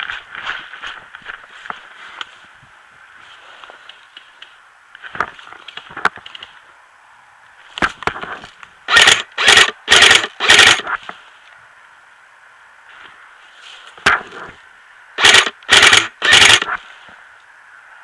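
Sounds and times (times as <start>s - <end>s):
loud scraping rustles: 0.0s - 2.6s, 3.2s - 4.4s, 7.6s - 11.5s, 12.9s - 17.3s
sharp clicks: 7.8s - 11.0s, 15.2s - 16.8s.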